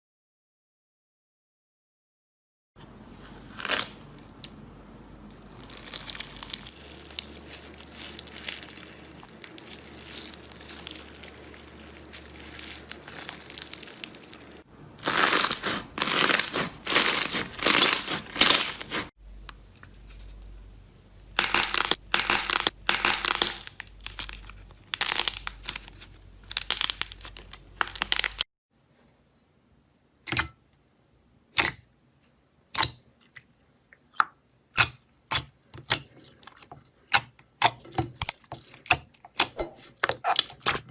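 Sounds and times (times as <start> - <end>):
slime squishing and popping: 5.4 - 19.0, 34.7 - 40.9.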